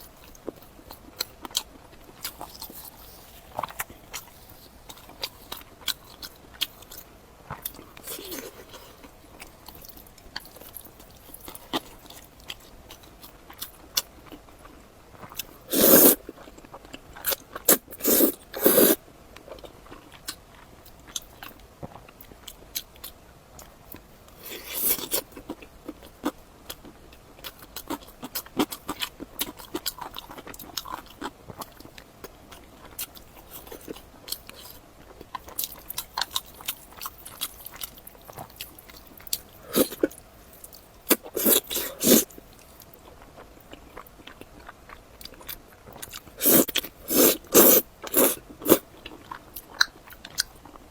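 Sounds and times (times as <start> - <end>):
chewing and biting: 24.4 - 50.9.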